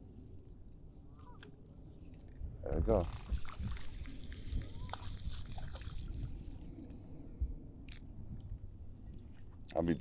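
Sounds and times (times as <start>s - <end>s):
trickling and dripping water: 3.0s - 6.7s.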